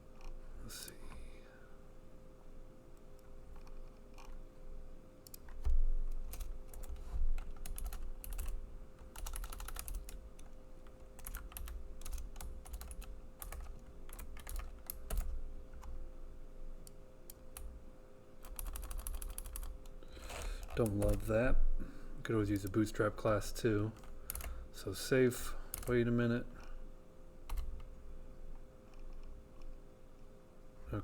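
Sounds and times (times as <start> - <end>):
typing on computer keyboard: 5.2 - 16.0, 18.4 - 21.3, 24.0 - 24.6, 25.7 - 26.0, 27.5 - 27.9.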